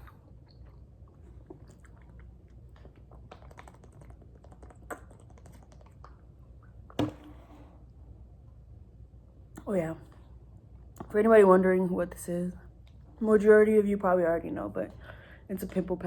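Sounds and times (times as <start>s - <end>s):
wet chewing mouth sounds: 0.0s - 6.9s.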